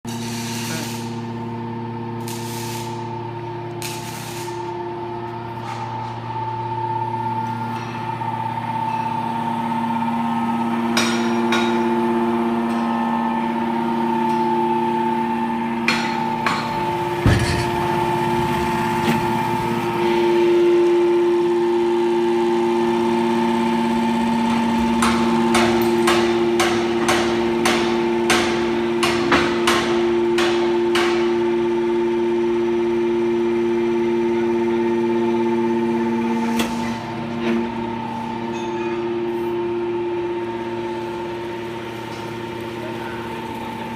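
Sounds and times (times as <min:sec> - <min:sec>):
hydraulic machine hum and whine: 0:00.0 - 0:43.9
metal clanks and knocks: 0:10.9 - 0:11.9, 0:15.8 - 0:19.3
heavy thump: 0:17.2 - 0:17.8.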